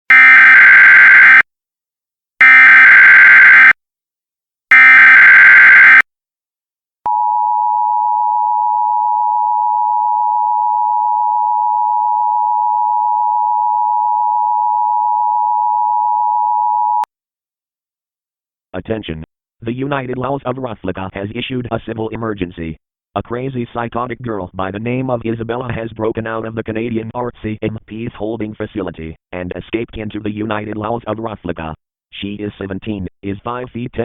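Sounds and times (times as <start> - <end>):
two-tone attention signal: 4.7 - 6.0.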